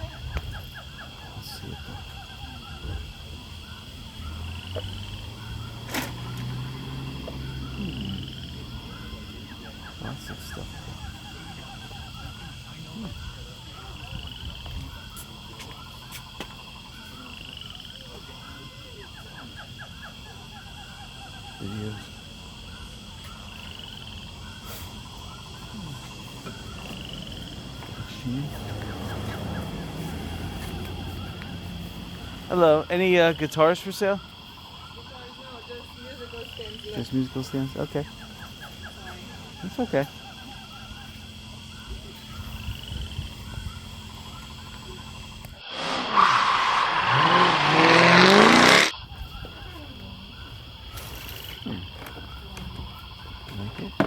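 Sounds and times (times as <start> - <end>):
chirping animal calls: 0.0 - 51.1
low engine hum: 24.0 - 33.4.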